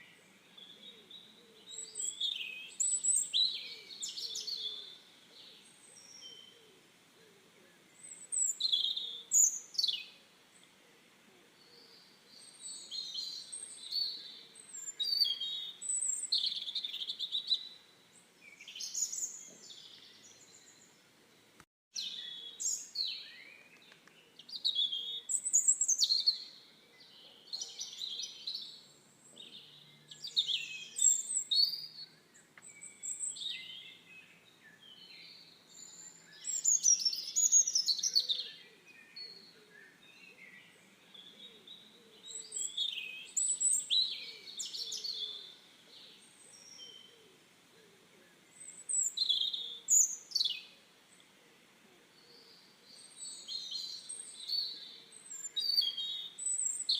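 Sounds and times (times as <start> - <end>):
faint bird calls: 0.0 - 17.8
birds chirping song: 0.0 - 56.9.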